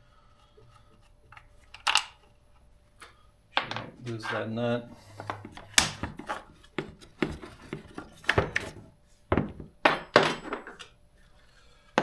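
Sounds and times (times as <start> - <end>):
tools knocking and clunking: 3.6 - 4.4, 5.0 - 10.8.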